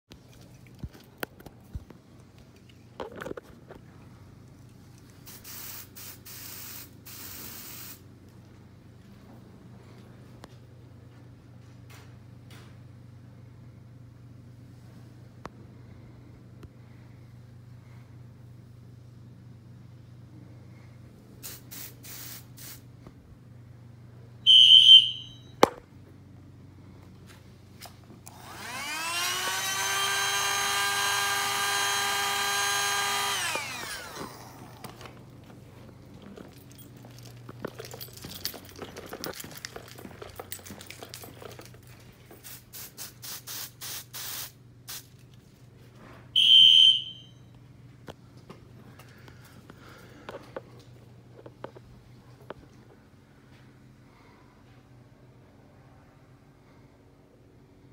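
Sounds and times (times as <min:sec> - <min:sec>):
aerosol spray hissing: 0:05.3 - 0:08.0, 0:21.4 - 0:22.8, 0:42.4 - 0:45.1
low steady hum: 0:08.0 - 0:21.7, 0:22.6 - 0:43.1, 0:44.5 - 0:57.9
loud high-pitched beep: 0:24.5 - 0:25.6, 0:46.4 - 0:47.5
handling clicks and rustling: 0:34.1 - 0:42.5.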